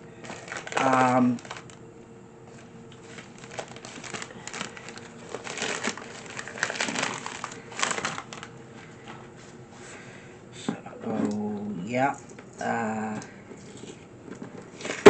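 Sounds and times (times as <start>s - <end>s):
packaging crinkling and rustling: 0.2s - 1.8s, 2.5s - 9.2s.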